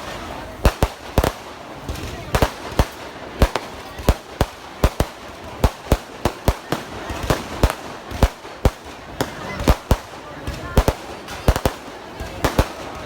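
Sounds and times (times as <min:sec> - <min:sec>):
firecrackers cracking: 0:00.0 - 0:13.0.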